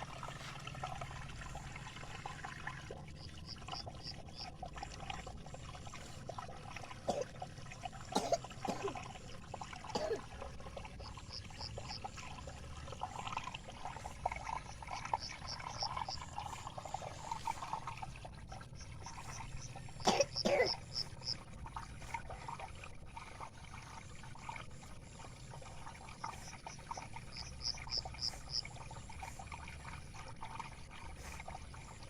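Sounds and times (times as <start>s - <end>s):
water trickling: 0.0s - 32.0s
person coughing: 8.2s - 9.0s, 9.9s - 10.3s, 20.0s - 20.8s.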